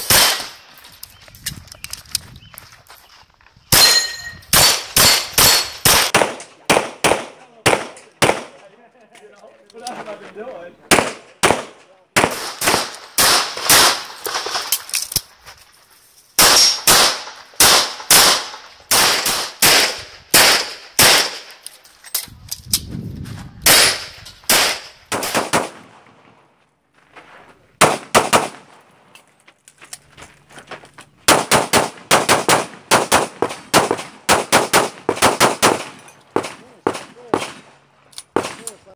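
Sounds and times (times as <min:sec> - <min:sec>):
pistol shots: 0:00.0 - 0:00.6, 0:03.7 - 0:08.6, 0:10.9 - 0:14.8, 0:16.4 - 0:21.5, 0:23.6 - 0:25.9, 0:27.8 - 0:28.8, 0:31.3 - 0:38.8.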